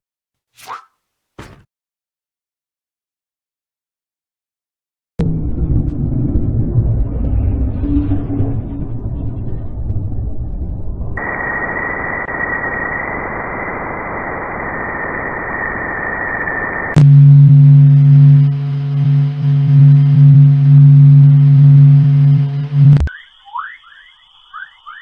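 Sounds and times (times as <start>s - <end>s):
loud low hum with overtones: 5.2s - 14.8s, 16.6s - 23.1s
steady hiss with high tone: 11.2s - 17.0s, 23.1s - 25.0s.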